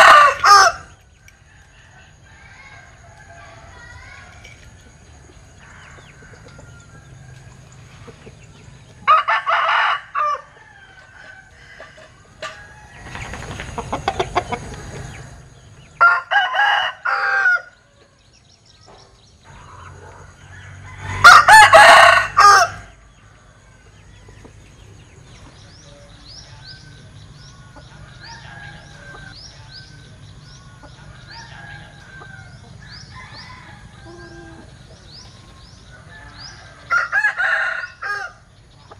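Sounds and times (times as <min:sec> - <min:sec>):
rooster crowing: 0:00.0 - 0:04.0, 0:05.6 - 0:07.8, 0:09.0 - 0:13.2, 0:16.0 - 0:17.8, 0:19.7 - 0:23.0, 0:31.1 - 0:34.7, 0:35.9 - 0:38.4
small birds chirping: 0:00.0 - 0:21.2, 0:22.7 - 0:38.9.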